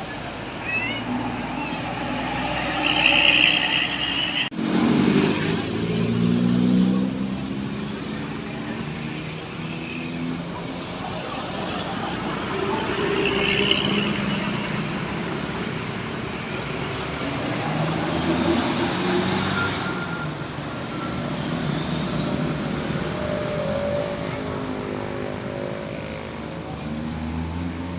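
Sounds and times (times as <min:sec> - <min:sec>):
vehicles passing: 0:00.0 - 0:27.9.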